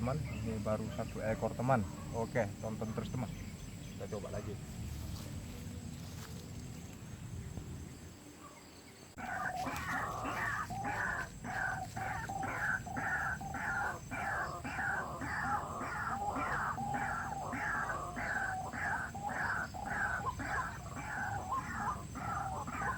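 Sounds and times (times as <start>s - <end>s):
bird harsh repeated call: 9.2s - 22.9s.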